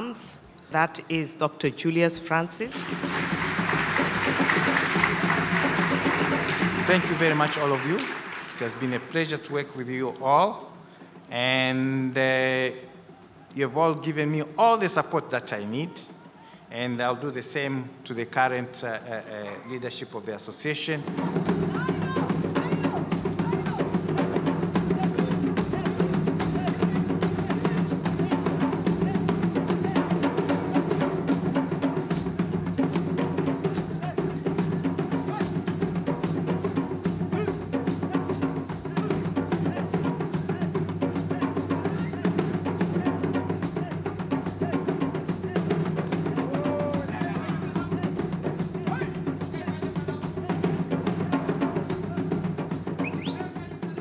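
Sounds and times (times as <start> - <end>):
fast dense drumming: 2.8 - 7.9, 21.0 - 54.0.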